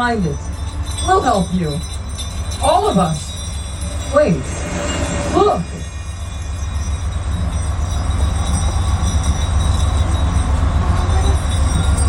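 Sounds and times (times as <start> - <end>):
train wheels rumbling: 0.0 - 12.0.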